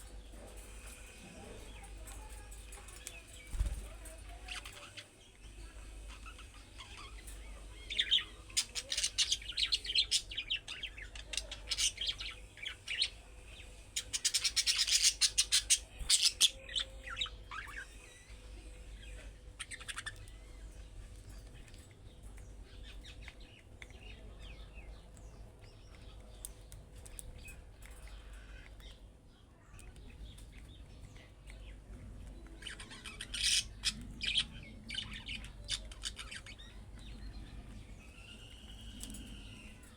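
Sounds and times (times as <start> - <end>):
budgerigars chattering and chirping: 1.8 - 29.0, 29.8 - 39.9.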